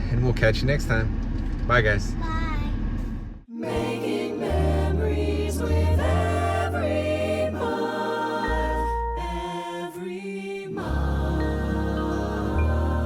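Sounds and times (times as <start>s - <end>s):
slow background music: 3.6s - 10.0s, 10.7s - 13.0s.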